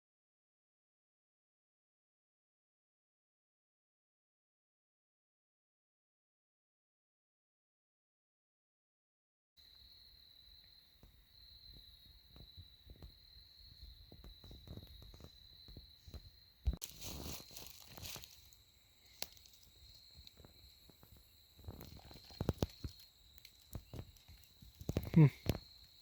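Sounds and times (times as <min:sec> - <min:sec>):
footsteps in dry leaves: 0:16.8 - 0:18.6.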